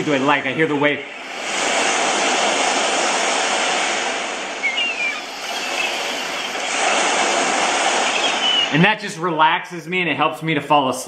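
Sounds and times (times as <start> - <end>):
recorded ocean waves: 0.0 - 9.5
faint bird chirps: 4.6 - 8.8.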